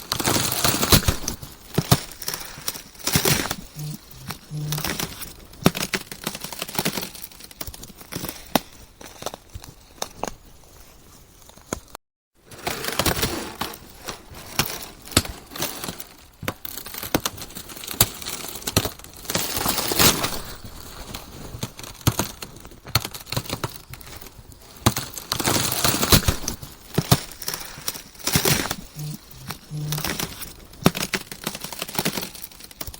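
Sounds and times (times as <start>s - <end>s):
ice cracking: 12.6s - 32.9s.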